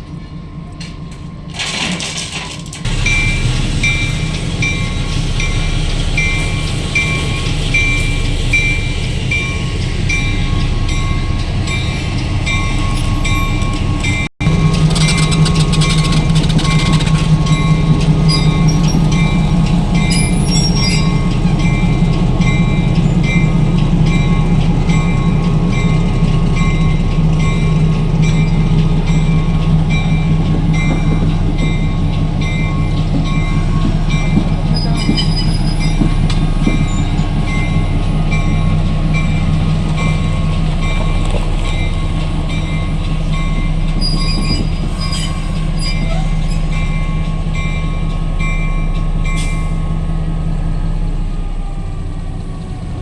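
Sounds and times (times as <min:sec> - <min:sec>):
diesel locomotive droning: 0:00.0 - 0:53.0
locomotive bell ringing: 0:02.8 - 0:50.3.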